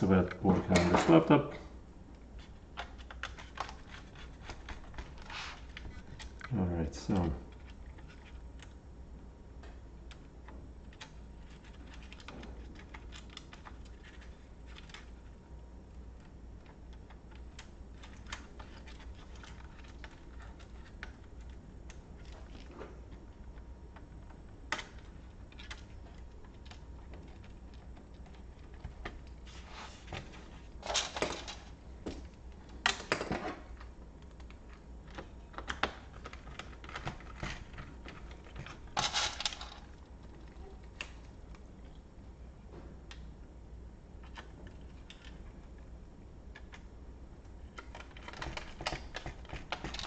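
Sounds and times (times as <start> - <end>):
faint low hum: 0.0 - 50.0
plastic laptop parts clattering: 2.7 - 8.8, 10.8 - 15.4, 16.1 - 21.6, 30.0 - 41.2, 47.6 - 50.0.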